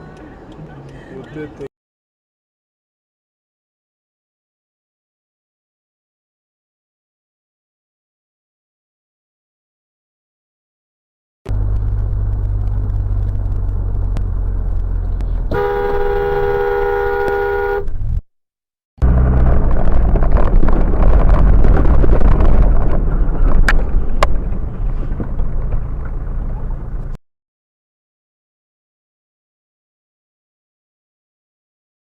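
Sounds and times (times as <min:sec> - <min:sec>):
road and engine rumble: 0:00.0 - 0:01.7, 0:11.5 - 0:18.2, 0:19.0 - 0:27.2
car horn blast: 0:15.5 - 0:18.0
rushing noise: 0:19.0 - 0:27.0.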